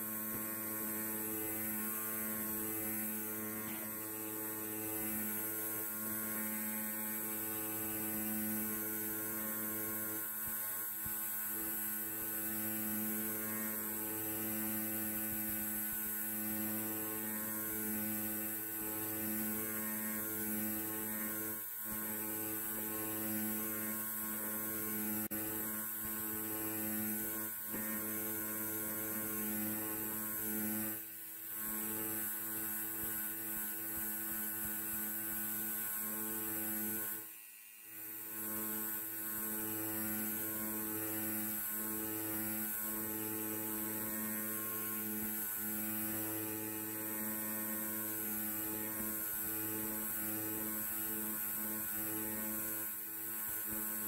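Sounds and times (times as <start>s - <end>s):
electric hair clipper humming: 0.0s - 54.0s.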